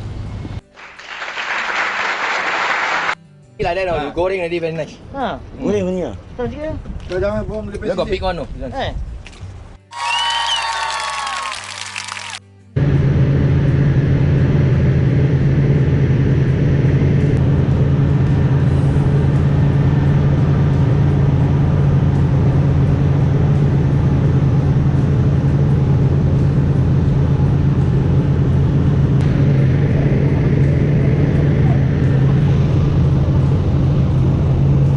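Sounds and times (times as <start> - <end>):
boat engine droning: 12.3 - 34.9.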